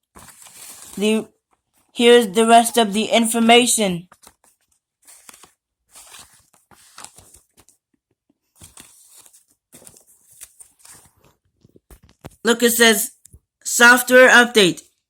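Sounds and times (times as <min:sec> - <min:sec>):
paper rustling and crinkling: 0:00.0 - 0:01.9, 0:04.1 - 0:12.4.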